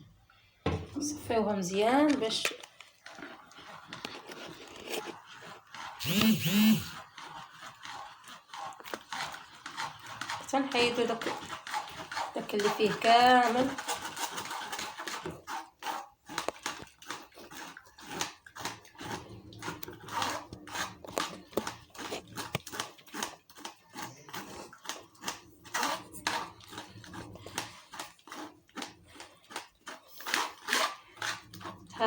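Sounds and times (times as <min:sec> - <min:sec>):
wet scraping through a sieve: 0:02.2 - 0:06.0, 0:06.9 - 0:32.0.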